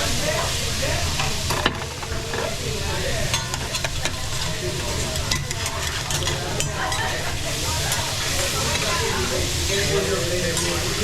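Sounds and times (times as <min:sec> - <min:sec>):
food sizzling on a griddle: 0:00.0 - 0:11.0
metal spatulas scraping and clicking: 0:03.3 - 0:07.1.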